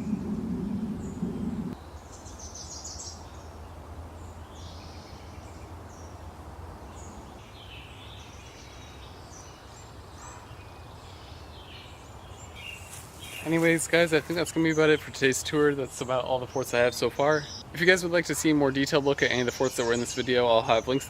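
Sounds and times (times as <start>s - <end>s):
steady low rumble: 0.0s - 1.8s
birds calling and singing: 0.0s - 3.5s, 6.9s - 21.0s.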